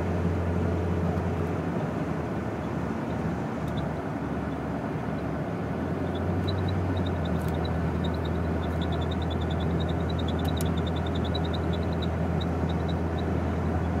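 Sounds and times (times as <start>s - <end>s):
car engine droning: 0.0s - 14.0s
high-pitched chirps: 6.1s - 13.3s.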